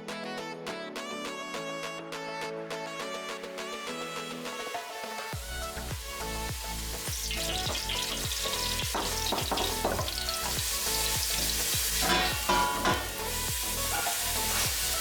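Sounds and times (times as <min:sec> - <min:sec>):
electronic music with kick drum: 0:03.0 - 0:15.0
food sizzling in a pan: 0:04.2 - 0:15.0.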